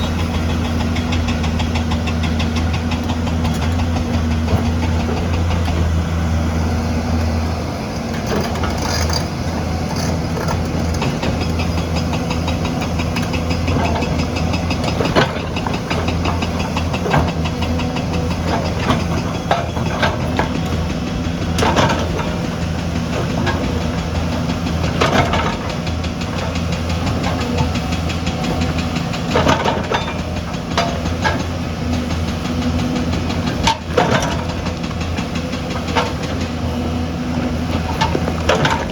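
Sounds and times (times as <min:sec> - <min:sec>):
heavy machinery diesel engine: 0:00.0 - 0:38.9
sharp metal clanks and knocks: 0:24.9 - 0:31.5.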